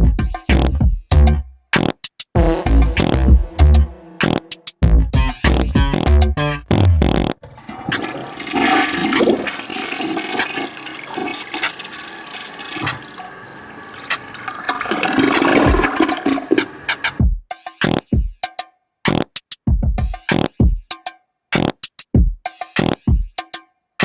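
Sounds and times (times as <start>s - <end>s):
toilet flushing: 7.4s - 17.2s.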